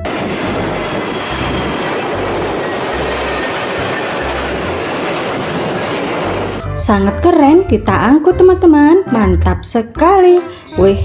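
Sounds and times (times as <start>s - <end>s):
low pulsing beat: 6.6s - 11.0s.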